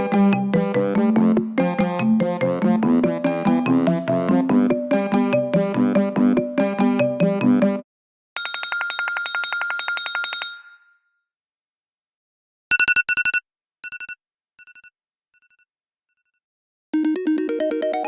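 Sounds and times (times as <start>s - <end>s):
musical ringtone: 17.0s - 18.0s.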